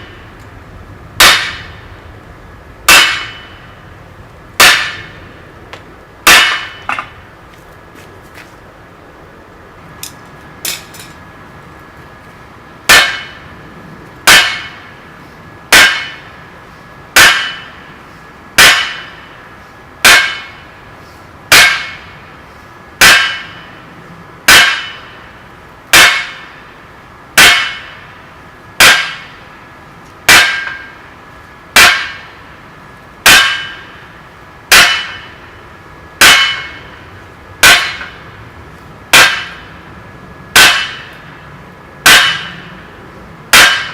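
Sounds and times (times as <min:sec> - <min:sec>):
hammer clanging on steel at anvil: 0:01.2 - 0:01.7, 0:02.9 - 0:03.6, 0:06.3 - 0:07.2, 0:12.9 - 0:13.4, 0:14.3 - 0:14.8, 0:17.2 - 0:17.8, 0:18.6 - 0:19.1, 0:20.0 - 0:20.6, 0:27.4 - 0:28.0, 0:30.3 - 0:30.9, 0:31.8 - 0:32.3, 0:33.3 - 0:33.9, 0:34.7 - 0:35.4, 0:36.2 - 0:36.8, 0:37.6 - 0:38.2, 0:39.1 - 0:39.7, 0:40.6 - 0:41.2, 0:42.1 - 0:42.7, 0:43.5 - 0:43.9.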